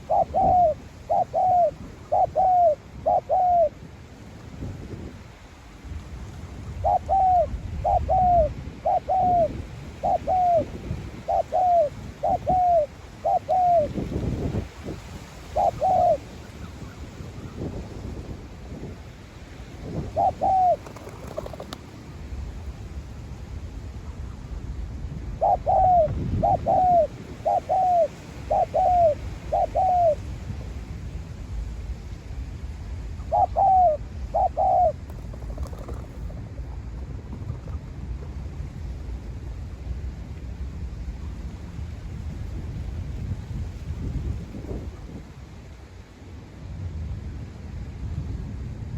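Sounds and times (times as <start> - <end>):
dove cooing: 0.0 - 3.8, 6.8 - 14.0, 15.4 - 16.3, 20.0 - 21.8, 25.4 - 30.2, 33.2 - 36.7.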